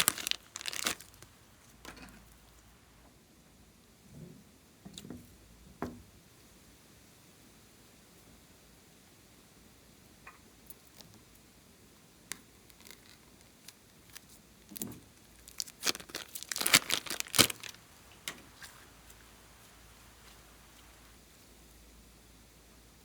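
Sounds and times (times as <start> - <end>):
crackling and crinkling: 0.0 - 2.8, 10.2 - 11.5, 12.2 - 21.9.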